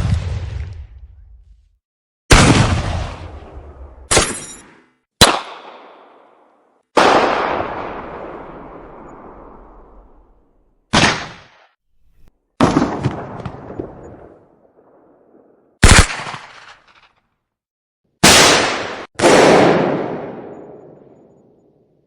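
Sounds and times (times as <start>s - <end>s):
echoing gunshots: 2.3s - 4.6s, 5.2s - 6.4s, 7.0s - 11.6s, 12.6s - 17.0s, 18.2s - 21.4s.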